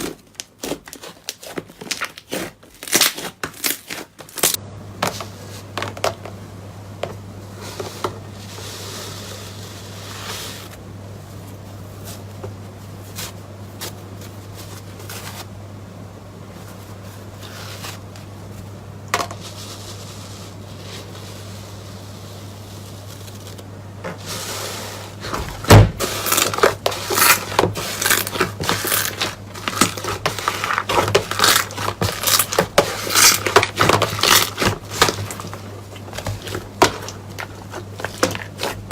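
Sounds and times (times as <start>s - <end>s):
crisp crackling and crunching: 0.0s - 4.6s, 25.1s - 38.9s
faint steady hum: 0.0s - 38.9s.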